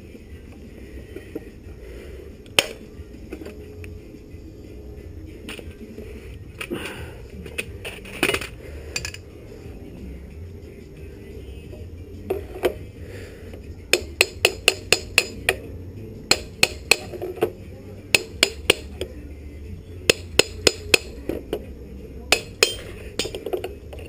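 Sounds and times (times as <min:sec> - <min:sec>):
hammer tapping on metal: 0:13.9 - 0:15.6, 0:16.3 - 0:17.5, 0:18.1 - 0:19.1, 0:20.1 - 0:21.6, 0:22.3 - 0:23.7.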